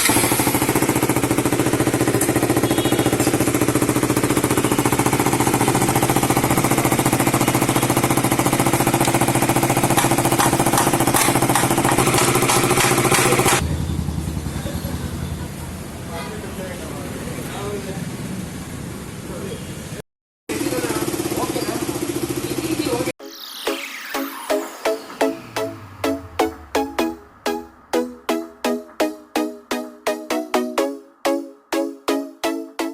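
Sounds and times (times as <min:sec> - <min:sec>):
motorcycle engine running: 0:00.0 - 0:16.2, 0:20.5 - 0:23.1.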